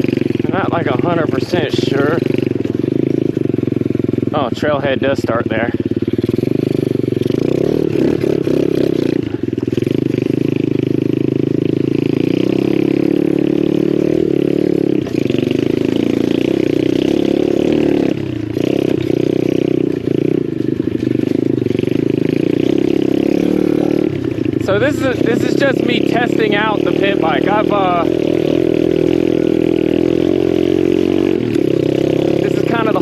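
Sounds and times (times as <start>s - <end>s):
motorbike engine running: 0.0s - 33.0s.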